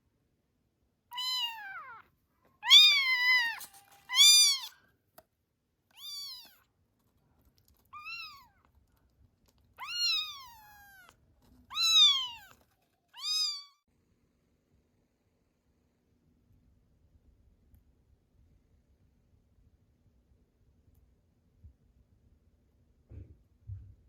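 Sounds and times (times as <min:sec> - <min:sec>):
kitten meowing: 0:01.1 - 0:02.0, 0:02.6 - 0:04.8, 0:06.0 - 0:06.6, 0:07.9 - 0:08.6, 0:09.8 - 0:12.6, 0:13.2 - 0:13.8.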